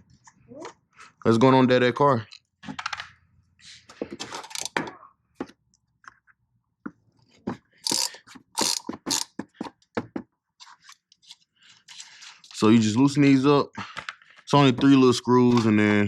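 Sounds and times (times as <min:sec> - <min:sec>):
wrench clicking and scraping on bolts: 0:04.2 - 0:04.8, 0:07.8 - 0:09.5.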